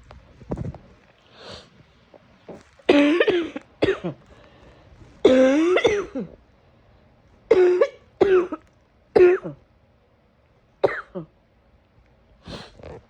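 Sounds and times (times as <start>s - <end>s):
person coughing harshly: 2.9s - 4.2s, 5.2s - 6.4s, 7.5s - 8.6s, 9.2s - 9.6s, 10.8s - 11.3s.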